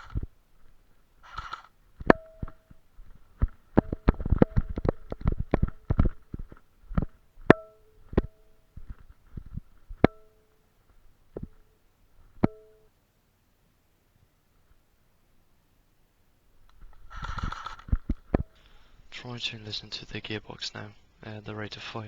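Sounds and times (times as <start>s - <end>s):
airsoft gun firing: 0.0s - 0.2s, 1.2s - 2.6s.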